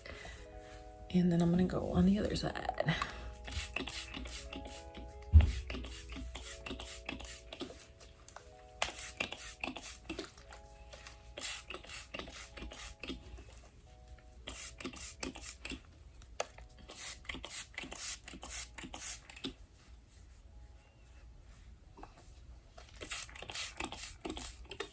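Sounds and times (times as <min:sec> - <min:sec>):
spray bottle hissing spritzes: 0:03.5 - 0:07.7, 0:08.8 - 0:10.2, 0:11.4 - 0:13.0, 0:14.5 - 0:15.7, 0:16.9 - 0:19.3.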